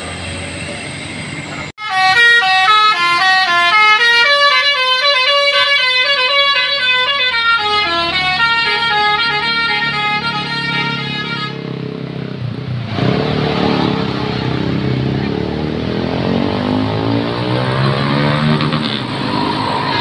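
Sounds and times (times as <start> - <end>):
bus engine driving past: 0.0 - 1.7
multi-tone bus horn melody: 1.8 - 11.8.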